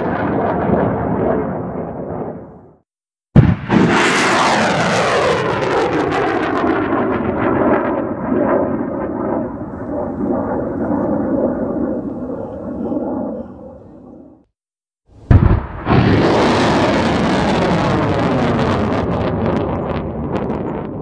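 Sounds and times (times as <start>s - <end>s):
rocket launcher blast: 3.3s - 8.4s, 15.2s - 20.8s
rocket rushing roar: 3.4s - 13.2s, 15.2s - 21.0s.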